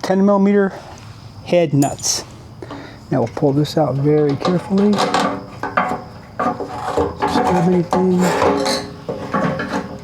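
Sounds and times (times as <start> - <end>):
metal scraping against tank: 4.4 - 10.0.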